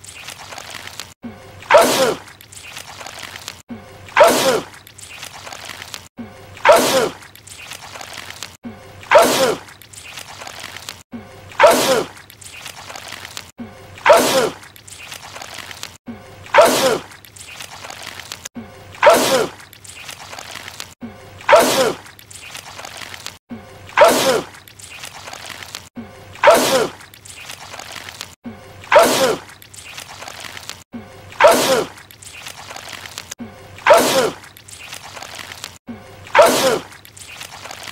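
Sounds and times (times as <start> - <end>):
man sneezing: 36.4 - 36.9.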